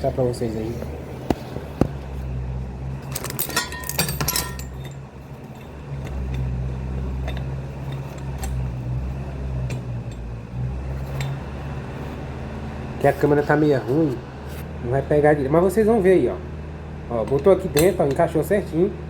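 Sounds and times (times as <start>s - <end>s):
steady low hum: 0.0s - 19.0s
metal tools clinking: 3.0s - 11.5s.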